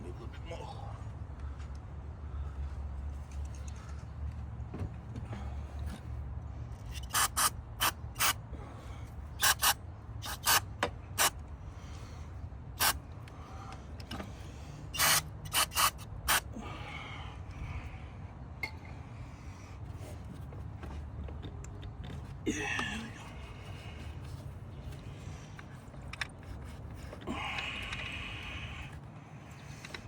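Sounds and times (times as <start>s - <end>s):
ratchet wrench clicking: 6.8s - 8.4s, 9.4s - 10.6s, 15.0s - 16.4s.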